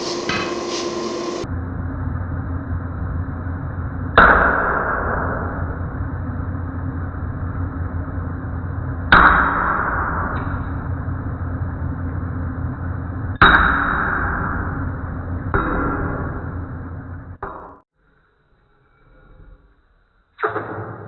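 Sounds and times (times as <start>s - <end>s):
hammer blows on steel: 0.0s - 1.4s
steady low hum: 0.0s - 17.4s.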